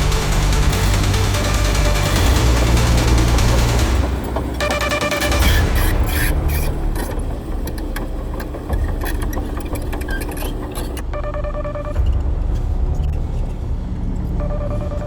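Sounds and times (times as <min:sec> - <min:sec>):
diesel machinery rumbling: 0:00.0 - 0:15.0
clanks and knocks: 0:01.5 - 0:11.3
warning tone: 0:14.4 - 0:15.0.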